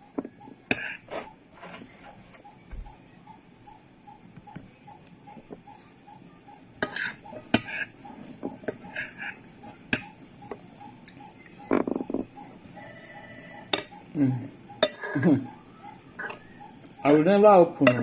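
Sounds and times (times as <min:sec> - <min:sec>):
spoon scraping a plate: 0:00.7 - 0:02.4, 0:06.8 - 0:10.6, 0:14.8 - 0:15.2.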